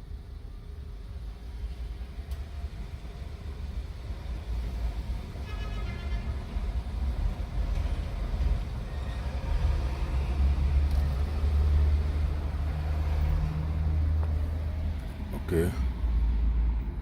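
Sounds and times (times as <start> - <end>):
motor vehicle engine rumbling: 6.6 - 16.4.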